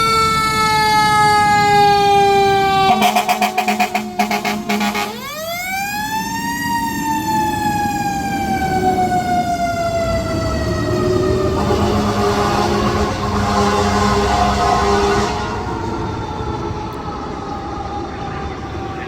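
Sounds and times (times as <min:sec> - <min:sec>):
fire engine air horn blasts: 0:00.0 - 0:05.9, 0:11.4 - 0:16.6
fire engine siren winding: 0:00.0 - 0:19.0.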